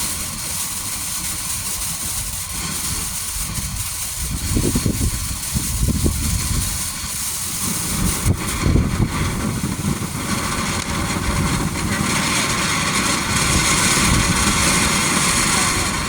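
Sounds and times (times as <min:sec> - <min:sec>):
firework sparks hissing: 0:00.0 - 0:16.0.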